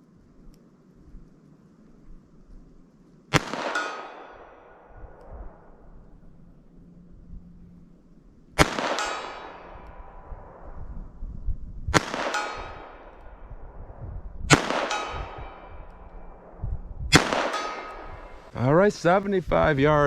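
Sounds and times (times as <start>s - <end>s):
ringing clang of steel plate: 3.7s - 4.4s, 8.9s - 9.8s, 12.3s - 13.0s, 14.7s - 16.4s, 17.4s - 18.5s
revolver shots: 14.5s - 18.5s.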